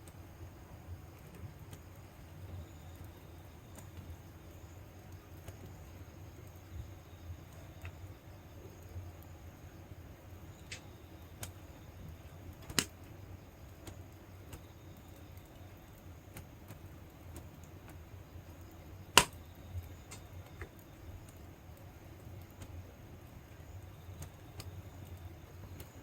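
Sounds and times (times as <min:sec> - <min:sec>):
wood fire crackling: 0:00.0 - 0:26.0.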